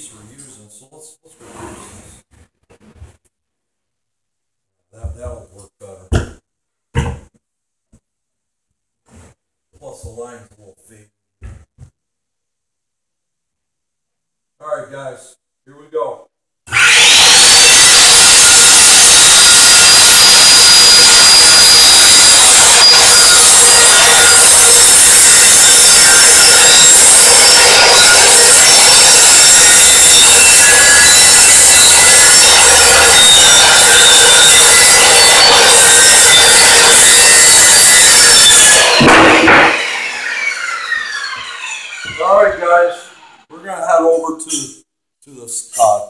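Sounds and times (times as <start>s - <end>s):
saw blade winding down whine: 16.7s - 43.5s
table saw cutting wood: 16.7s - 43.6s.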